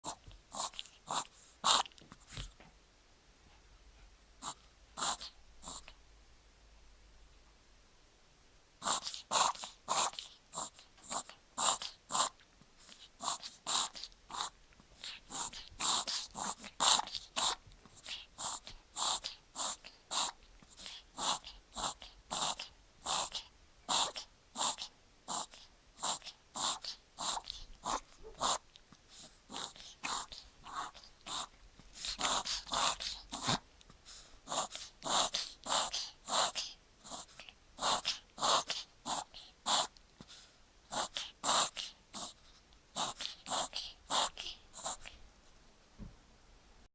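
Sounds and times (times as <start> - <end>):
puppy coughing and sneezing: 13.2 - 28.6, 29.5 - 33.7, 34.5 - 39.9, 40.9 - 42.4, 43.0 - 45.2.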